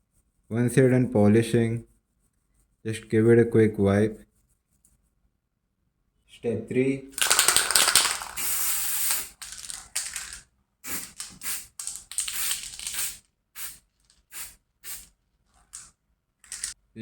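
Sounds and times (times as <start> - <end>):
spray can hissing: 7.2 - 15.1.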